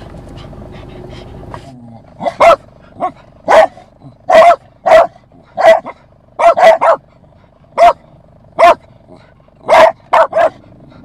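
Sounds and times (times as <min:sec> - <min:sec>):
dog barking: 0:02.2 - 0:07.1, 0:07.7 - 0:10.6.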